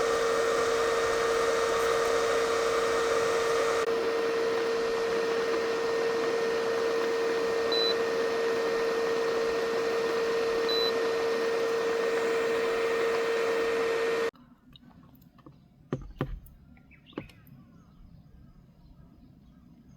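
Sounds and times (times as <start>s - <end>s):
small electric appliance humming: 0.0s - 14.3s.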